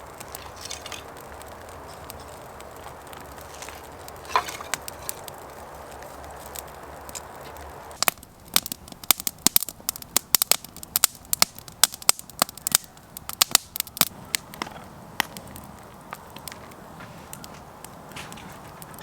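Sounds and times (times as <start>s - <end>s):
campfire crackling and popping: 0.0s - 19.0s.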